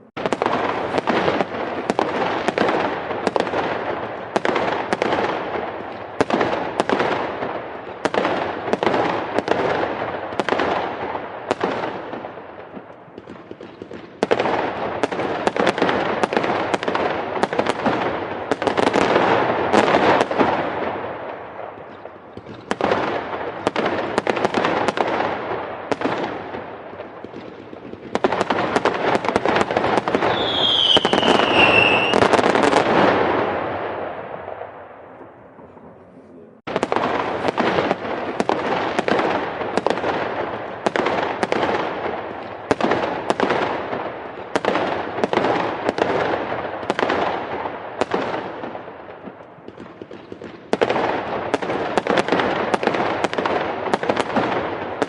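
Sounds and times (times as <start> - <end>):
fireworks bangs and crackling: 0.0 - 55.0
falling firework whistle: 30.1 - 33.2.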